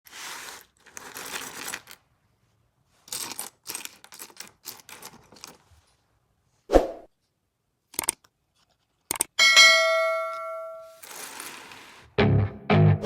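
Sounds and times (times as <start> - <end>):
plastic pieces clattering: 0.1 - 2.1, 3.0 - 5.7, 11.0 - 12.1.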